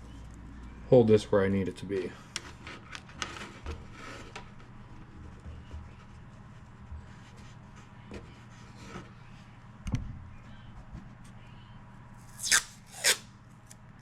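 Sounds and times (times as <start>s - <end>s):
steady low hum: 0.0s - 14.0s
hands rustling tape: 12.2s - 13.8s.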